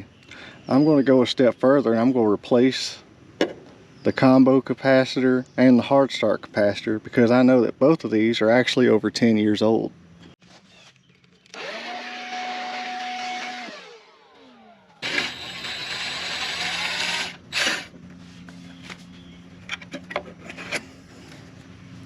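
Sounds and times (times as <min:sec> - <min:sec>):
cordless drill whining: 0:11.5 - 0:18.0.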